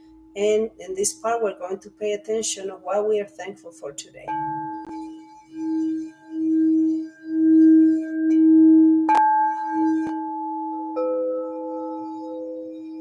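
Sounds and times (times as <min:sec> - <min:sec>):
singing bowls ringing: 0:00.0 - 0:00.4, 0:04.3 - 0:13.0
singing bowl struck: 0:04.3 - 0:13.0.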